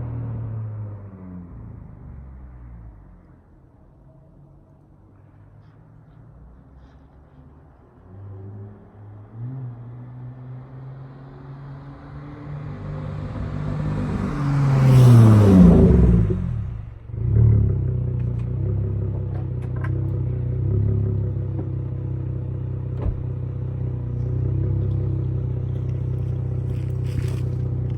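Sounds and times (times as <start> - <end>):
vehicle passing by: 6.7 - 17.8, 24.1 - 27.9.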